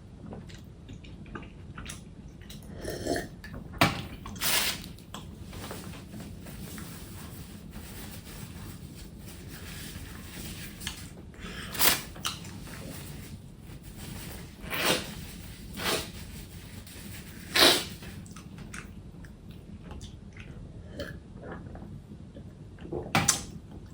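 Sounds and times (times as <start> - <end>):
quiet chewing: 0.2 - 4.4
noisy mouth sound bursts: 7.5 - 18.4.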